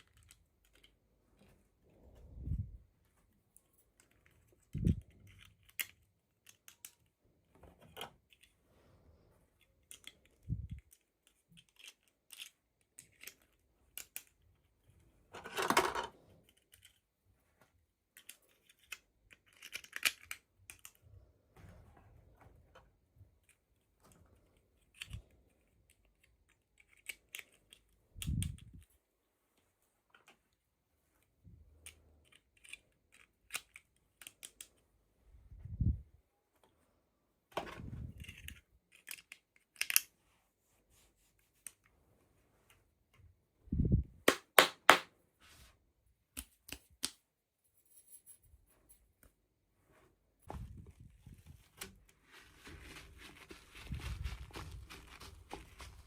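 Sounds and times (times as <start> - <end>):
plastic clicks and crinkles: 0.0 - 1.6, 3.2 - 8.6, 9.5 - 21.2, 22.6 - 29.0, 29.6 - 34.9, 37.5 - 40.2
packaging rustling: 52.0 - 56.0.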